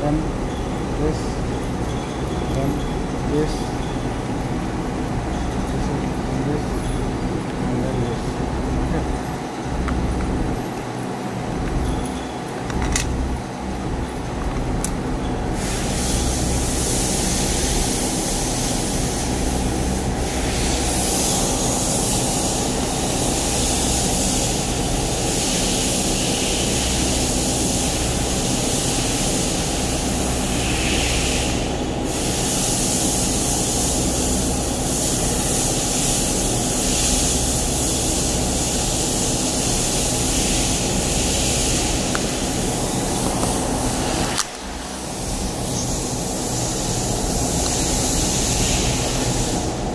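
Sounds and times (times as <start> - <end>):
low machine hum: 0.0 - 49.9
machine rushing hiss: 15.5 - 49.9.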